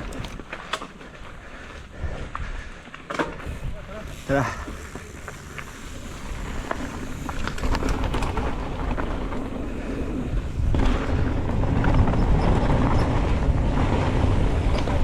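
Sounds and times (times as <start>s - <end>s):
bike tyres rumbling on dirt: 0.0s - 15.0s
wind buffeting microphone: 3.4s - 15.0s.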